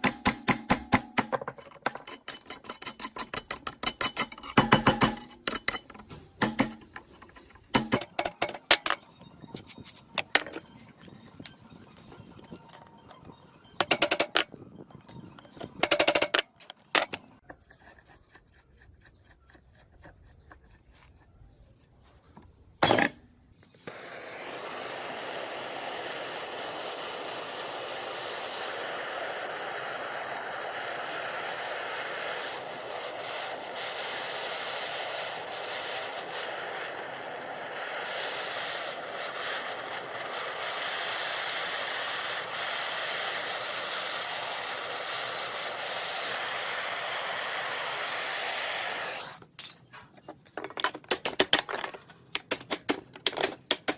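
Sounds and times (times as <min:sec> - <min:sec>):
sharp metallic knocks: 0:00.0 - 0:09.0, 0:13.8 - 0:14.5
power tool hissing with high whine: 0:23.6 - 0:49.7.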